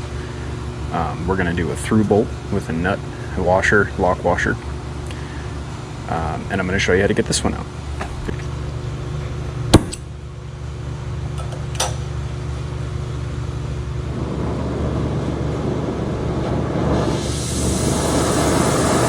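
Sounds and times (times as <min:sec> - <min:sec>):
low hum: 0:07.6 - 0:11.3, 0:12.0 - 0:19.0
gas torch flame hissing: 0:14.0 - 0:19.0.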